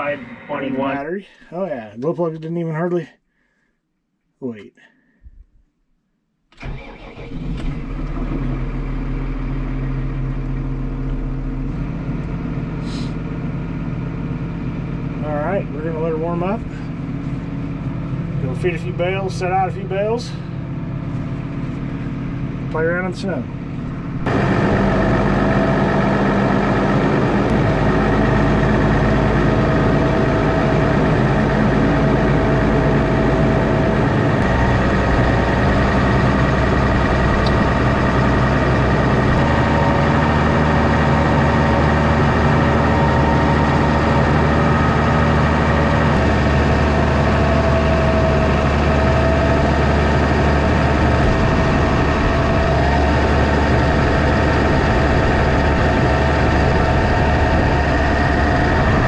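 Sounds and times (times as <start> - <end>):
diesel tractor engine running: 6.6 - 59.0.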